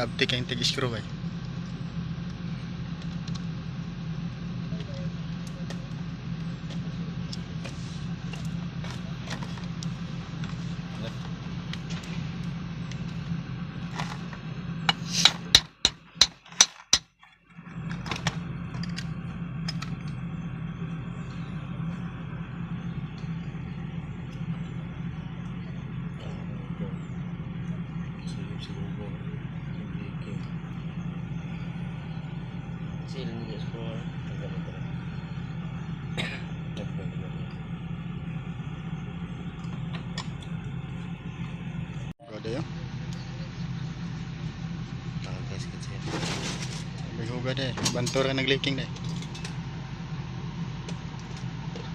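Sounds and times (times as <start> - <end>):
engine idling: 0.0 - 51.9
low machine hum: 0.0 - 51.9.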